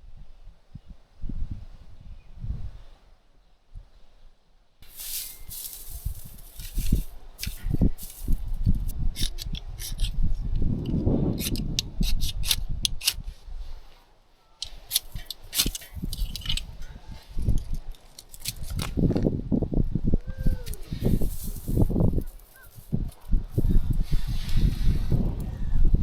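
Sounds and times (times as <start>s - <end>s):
dry grass crackling and rustling: 4.8s - 10.7s, 14.6s - 20.1s, 20.7s - 25.5s.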